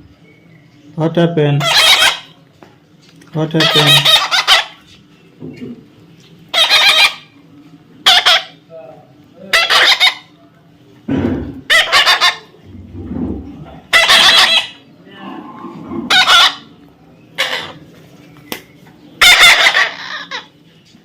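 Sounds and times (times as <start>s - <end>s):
parrot screeching: 1.6s - 2.4s, 3.5s - 4.8s, 6.5s - 7.4s, 8.0s - 8.6s, 9.4s - 10.4s, 11.7s - 12.5s, 13.9s - 14.9s, 16.0s - 16.8s, 17.4s - 17.8s, 19.2s - 20.5s.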